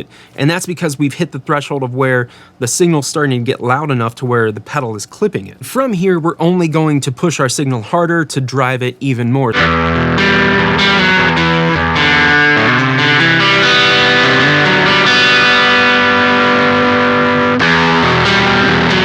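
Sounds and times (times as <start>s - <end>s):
distorted electric guitar chords: 9.5s - 19.0s.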